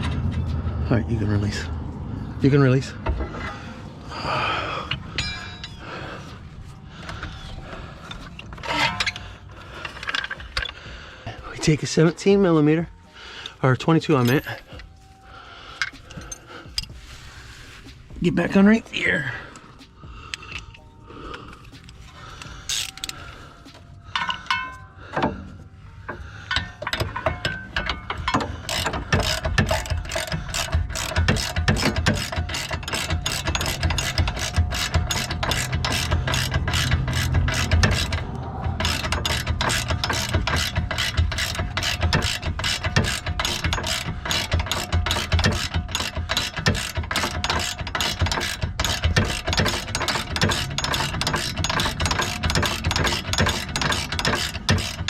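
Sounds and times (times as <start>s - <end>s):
socket ratchet clicking: 26.4s - 55.0s.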